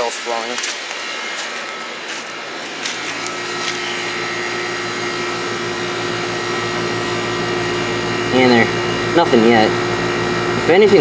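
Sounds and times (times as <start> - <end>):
air conditioner unit humming: 2.5 - 11.0.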